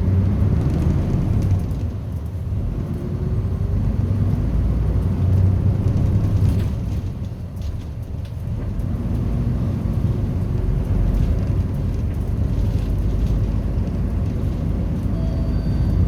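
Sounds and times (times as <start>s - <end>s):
bus engine rumble: 0.0s - 16.0s.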